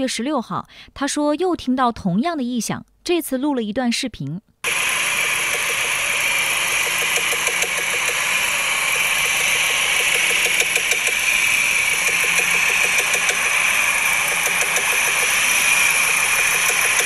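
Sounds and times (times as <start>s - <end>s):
engine hum: 4.6s - 17.0s
engine ticking knock: 4.7s - 17.0s.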